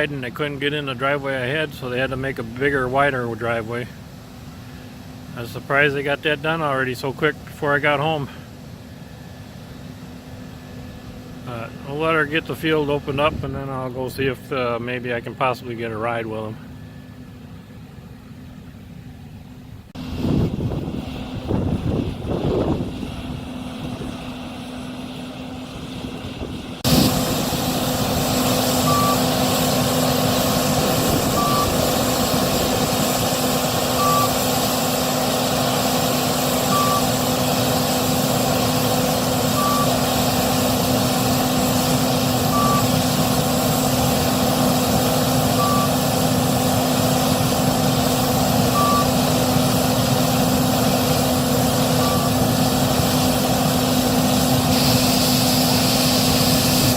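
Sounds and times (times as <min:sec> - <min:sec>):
combine harvester running: 0:00.0 - 0:56.9
short electronic beeps: 0:28.8 - 0:29.3, 0:31.2 - 0:31.9, 0:34.0 - 0:34.4, 0:36.7 - 0:37.1, 0:39.6 - 0:40.0, 0:42.5 - 0:43.0, 0:45.6 - 0:46.0, 0:48.7 - 0:49.2, 0:51.9 - 0:52.4.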